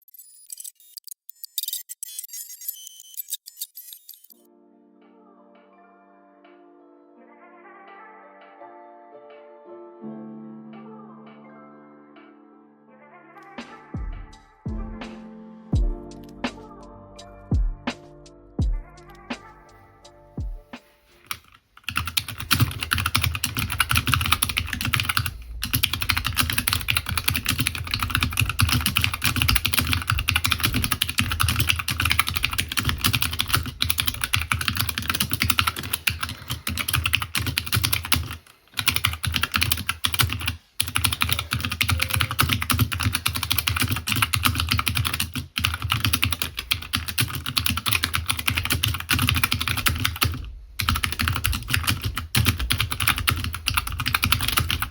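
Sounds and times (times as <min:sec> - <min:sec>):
fast mechanical keyboard typing: 0:21.3 - 0:54.9.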